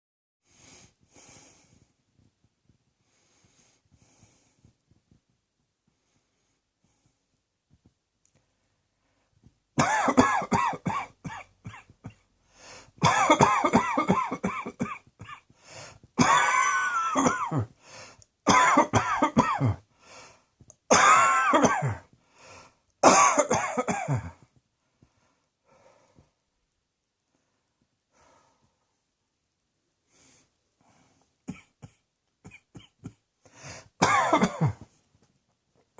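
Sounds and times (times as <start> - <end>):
breathing: 0.4 - 2.0, 3.0 - 5.0, 5.8 - 7.3, 8.6 - 9.5, 12.4 - 13.0, 15.5 - 16.1, 17.8 - 18.3, 19.9 - 20.6, 22.1 - 22.9, 24.8 - 26.4, 27.3 - 29.0, 30.0 - 31.4, 33.4 - 34.0
person coughing: 9.8 - 12.2, 13.0 - 15.5, 16.2 - 17.7, 18.5 - 19.8, 20.9 - 22.1, 23.0 - 24.4, 31.5 - 33.2, 34.0 - 34.9.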